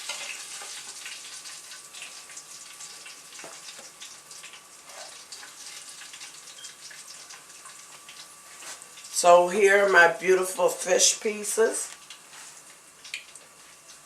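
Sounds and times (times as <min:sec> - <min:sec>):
fish frying in hot oil: 0:00.0 - 0:14.0.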